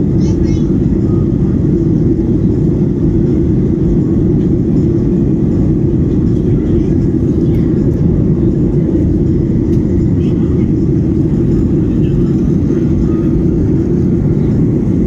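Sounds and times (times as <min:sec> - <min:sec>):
jet engine cabin drone: 0:00.0 - 0:15.0.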